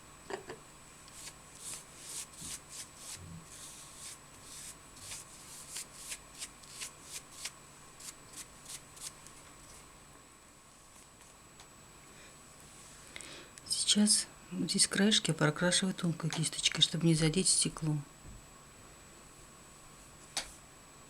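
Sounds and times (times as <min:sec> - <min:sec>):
paintbrush swishing on fabric: 0:01.1 - 0:09.2.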